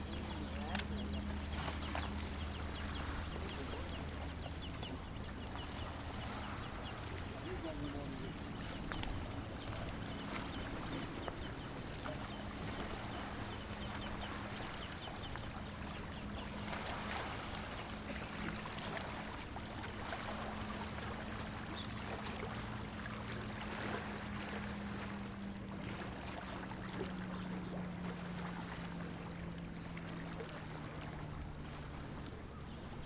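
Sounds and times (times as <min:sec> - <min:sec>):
outdoor noise: 0:00.0 - 0:19.8
low engine hum: 0:00.0 - 0:33.0
faint clicks: 0:00.7 - 0:01.2, 0:08.9 - 0:09.2, 0:32.2 - 0:32.5.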